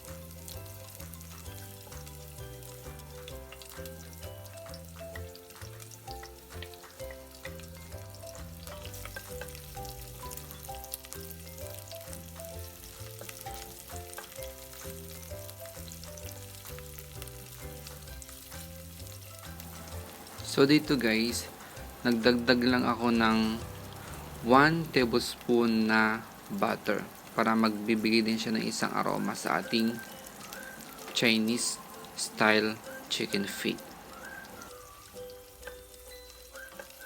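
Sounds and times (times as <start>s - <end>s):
background music with bass line: 0.0s - 25.6s
food sizzling in oil: 0.0s - 37.0s
stirring: 0.8s - 16.3s.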